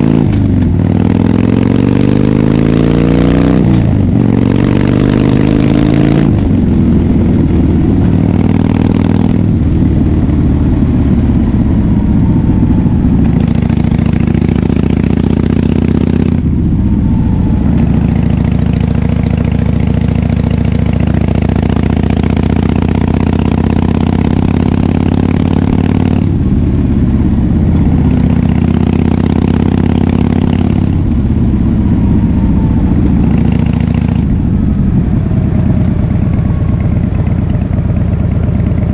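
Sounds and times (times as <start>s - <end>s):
loud motorcycle engine: 0.0s - 38.9s.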